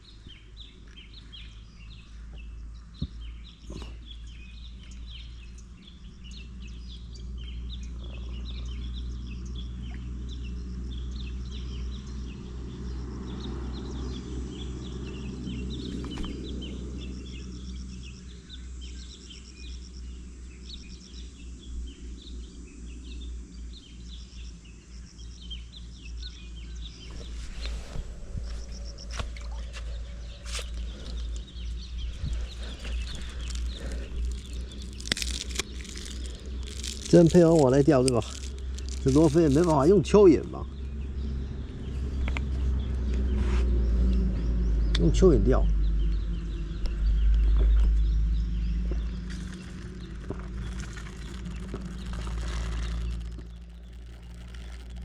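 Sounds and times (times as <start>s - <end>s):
small birds chirping: 0.0s - 55.0s
steady low rumble: 13.8s - 55.0s.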